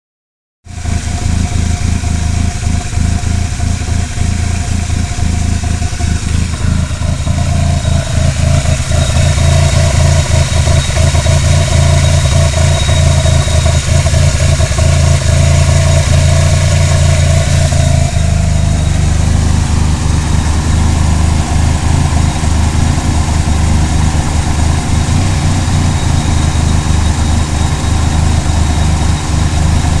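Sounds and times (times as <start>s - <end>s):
car engine rough idle: 0.7s - 30.0s.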